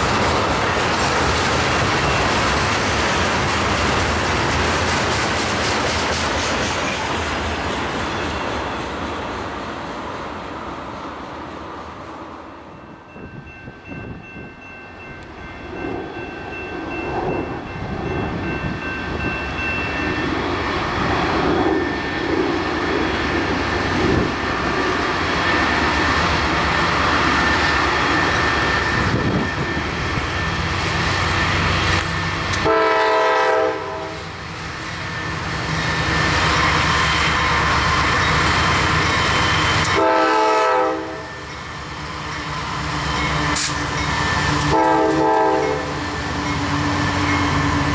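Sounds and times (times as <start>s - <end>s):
freight train passing: 0.0s - 47.9s
train air horn: 32.6s - 34.4s, 39.8s - 41.4s, 43.6s - 46.0s.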